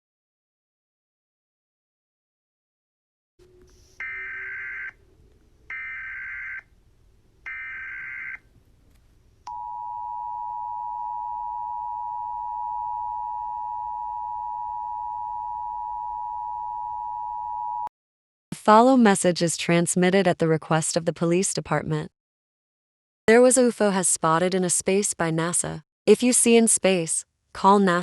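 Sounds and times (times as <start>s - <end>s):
two-tone attention signal: 4.0s - 4.9s.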